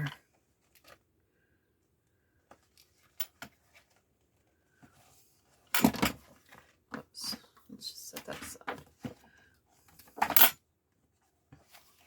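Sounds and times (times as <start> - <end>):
book pages rustling: 2.4 - 10.2, 10.9 - 12.0.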